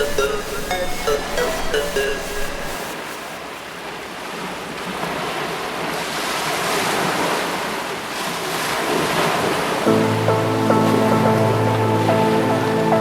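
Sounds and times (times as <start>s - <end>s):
music with sustained notes: 0.0s - 3.0s, 9.9s - 13.0s
heavy ocean surf: 0.0s - 13.0s.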